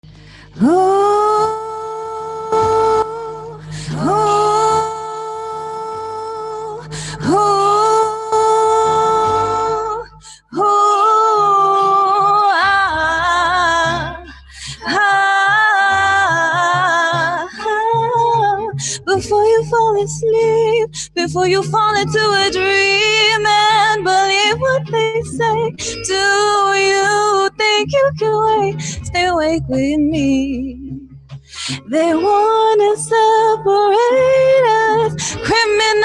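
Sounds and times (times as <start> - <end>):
person singing wordlessly: 0.6 - 14.2, 14.8 - 30.7.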